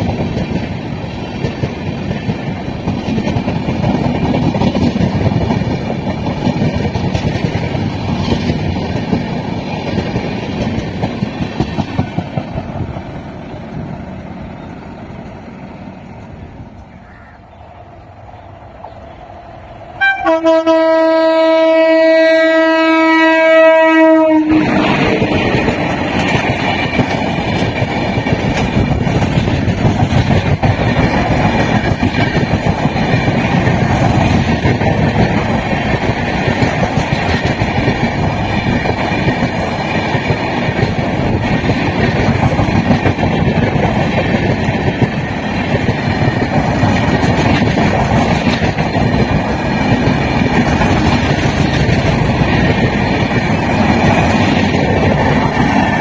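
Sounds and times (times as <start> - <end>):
wheels clacking over rail joints: 0.0 - 17.1, 22.6 - 56.0
train rumbling past: 0.0 - 56.0
locomotive horn: 20.0 - 25.1.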